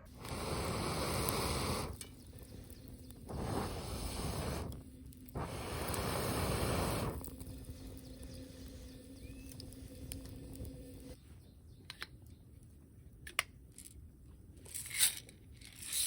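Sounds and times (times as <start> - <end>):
rushing air bursts: 0.0 - 11.2.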